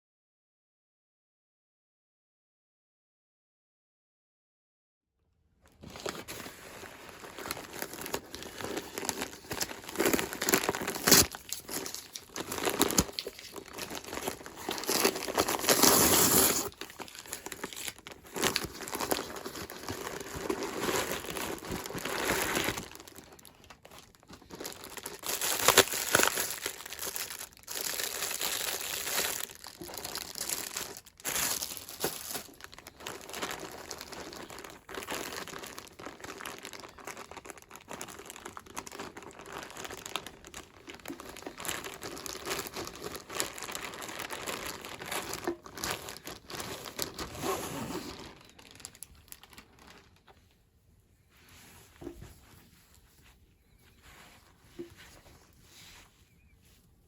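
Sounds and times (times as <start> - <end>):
packaging crinkling and tearing: 5.6 - 50.5.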